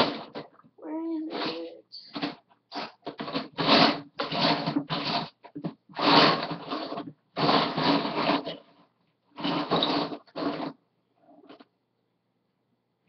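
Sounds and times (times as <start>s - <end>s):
plastic bricks rattling: 0.0s - 0.7s, 1.3s - 8.8s, 9.4s - 10.8s.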